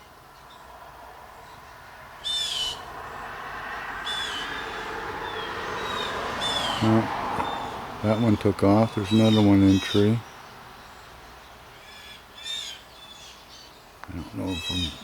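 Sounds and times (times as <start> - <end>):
blue jays calling: 2.2 - 2.9, 4.0 - 15.0.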